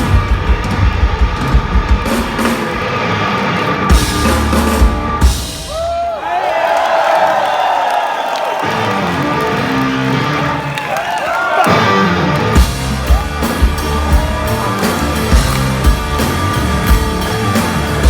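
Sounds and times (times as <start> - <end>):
heavy steady drum beat: 0.0 - 2.9, 3.9 - 6.0, 12.6 - 18.0
bass guitar: 0.0 - 5.8, 11.7 - 18.0
electric guitar: 11.6 - 18.0.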